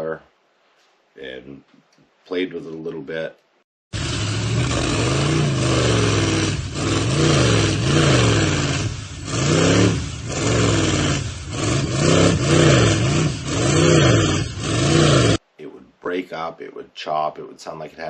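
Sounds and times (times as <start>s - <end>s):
boat engine revving: 4.0s - 15.4s.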